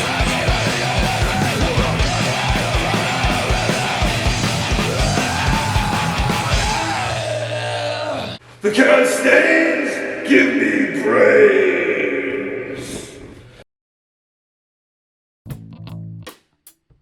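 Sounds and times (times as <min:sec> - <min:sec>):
fast kick drum strokes: 0:00.0 - 0:07.2
sustained guitar tones: 0:00.0 - 0:07.2
punk metal band playing: 0:00.0 - 0:07.6
person yelling vocals: 0:00.0 - 0:12.8.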